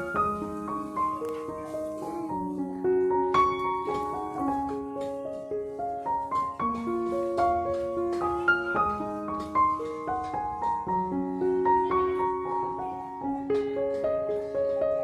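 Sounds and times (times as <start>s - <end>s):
gentle piano music: 0.0s - 15.0s.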